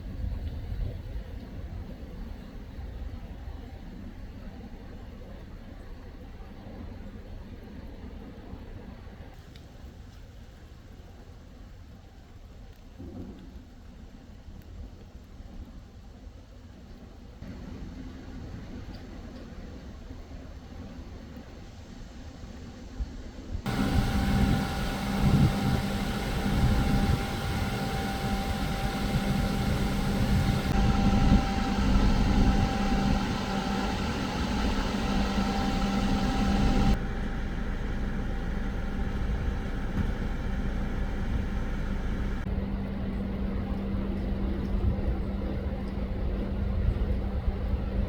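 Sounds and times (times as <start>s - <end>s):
vehicle engine idling: 23.7s - 44.8s.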